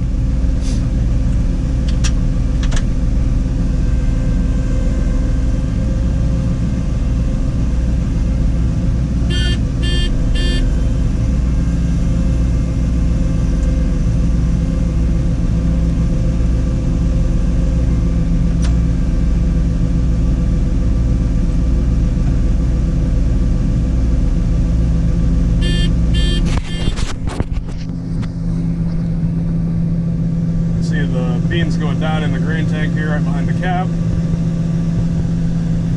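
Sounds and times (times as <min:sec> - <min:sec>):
combine harvester engine hum: 0:00.0 - 0:35.9
short beeps: 0:09.3 - 0:10.7, 0:25.6 - 0:27.0.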